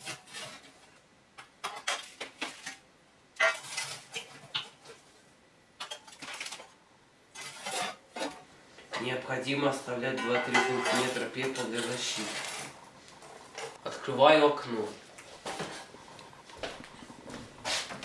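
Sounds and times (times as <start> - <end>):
metal tool scraping in stove: 0.0 - 1.0, 3.4 - 5.0, 7.3 - 9.1, 9.8 - 13.8.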